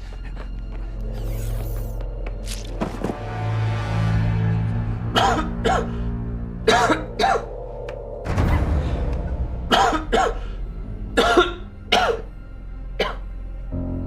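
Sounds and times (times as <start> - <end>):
background music: 0.0 - 14.0
person coughing: 5.1 - 6.0, 6.7 - 7.5, 9.7 - 10.5, 11.2 - 12.3.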